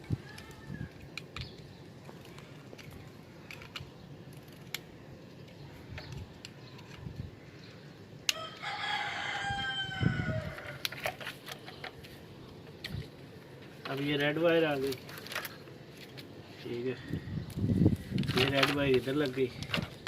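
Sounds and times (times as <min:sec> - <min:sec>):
rooster crowing: 0:08.3 - 0:10.8.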